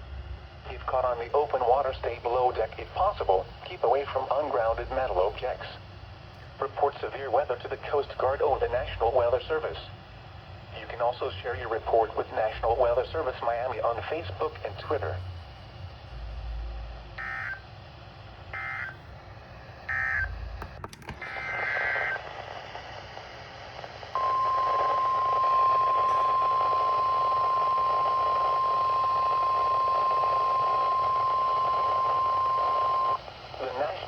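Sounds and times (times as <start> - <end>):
radio hiss: 0.5 - 34.0
steady warning alarm tone: 17.2 - 17.7, 18.5 - 19.0, 19.8 - 20.5, 24.2 - 33.2
digital data tone buzzes: 24.2 - 33.2.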